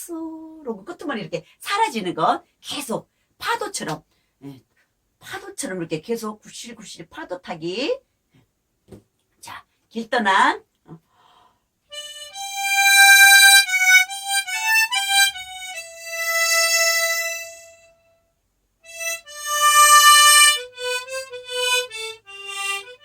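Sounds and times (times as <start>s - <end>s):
harmonica slow melody: 11.9s - 23.0s.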